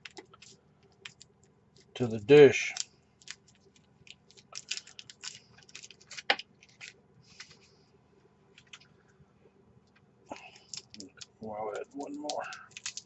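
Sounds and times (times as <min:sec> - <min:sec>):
wrappers crinkling: 0:00.0 - 0:07.6, 0:10.4 - 0:13.0.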